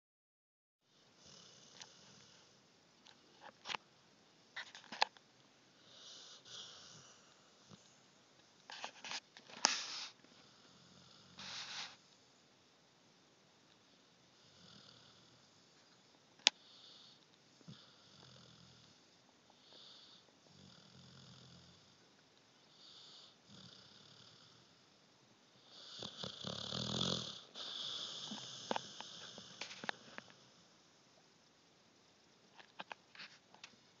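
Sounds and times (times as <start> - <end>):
puppy snoring softly: 0.9 - 3.8, 4.5 - 12.2, 14.3 - 22.0, 22.6 - 24.9, 25.6 - 30.8.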